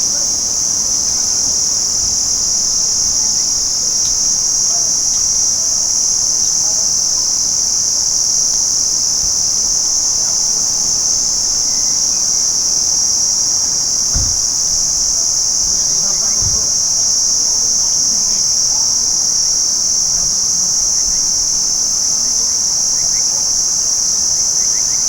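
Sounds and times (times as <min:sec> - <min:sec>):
crickets chirping: 0:00.0 - 0:25.0
low thump: 0:11.9 - 0:17.4.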